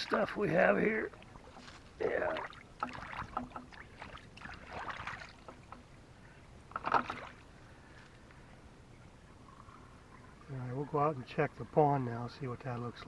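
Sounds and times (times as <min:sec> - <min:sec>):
water splashing and debris scraping: 0:00.0 - 0:05.9, 0:06.7 - 0:07.5.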